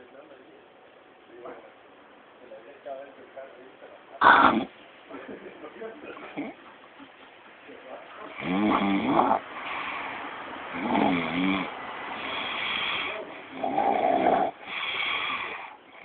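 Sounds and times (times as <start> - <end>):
snoring: 4.2 - 4.7, 6.2 - 6.6, 8.3 - 16.0.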